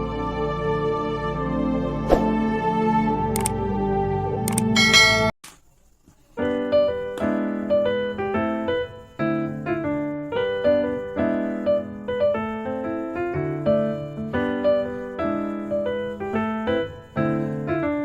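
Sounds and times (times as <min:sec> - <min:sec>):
gentle piano music: 0:06.4 - 0:18.0.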